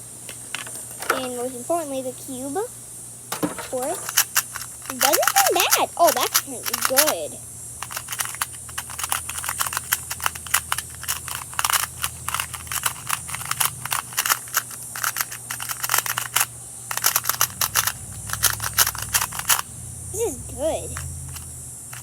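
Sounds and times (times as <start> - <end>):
plastic cube layers clicking: 3.6 - 7.2, 7.8 - 19.6.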